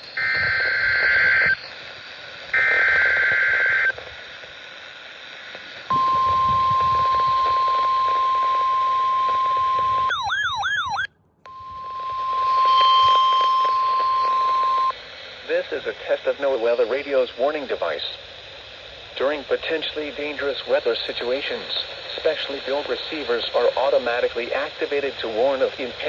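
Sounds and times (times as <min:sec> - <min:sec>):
buzzy screeching data bursts: 0:00.1 - 0:01.7
steady warning alarm tone: 0:05.9 - 0:14.9.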